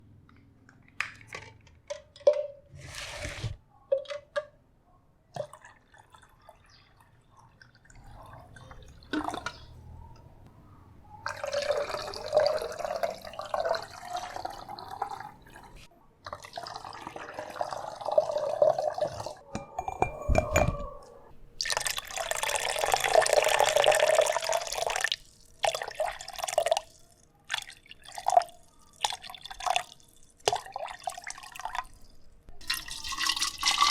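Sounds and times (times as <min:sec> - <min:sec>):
water pouring into a glass: 0:05.5 - 0:09.6, 0:11.2 - 0:19.4, 0:21.6 - 0:32.0, 0:32.6 - 0:33.9.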